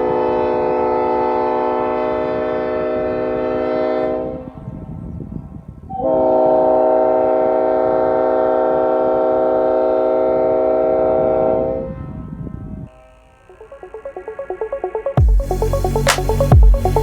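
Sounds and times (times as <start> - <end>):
train air horn chord blast: 0.0 - 4.6, 5.9 - 13.7.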